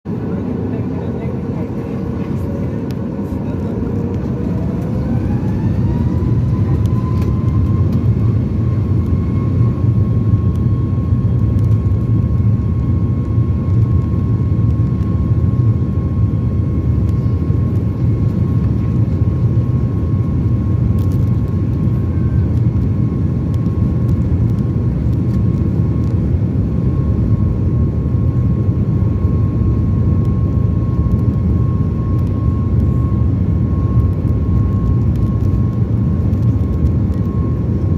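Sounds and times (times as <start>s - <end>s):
low engine rumble: 0.1s - 37.9s
jet engines spooling up: 1.3s - 9.8s.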